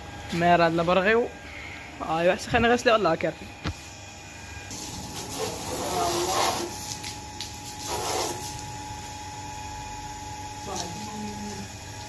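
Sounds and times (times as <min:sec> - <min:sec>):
hose water spraying: 0:04.7 - 0:08.7.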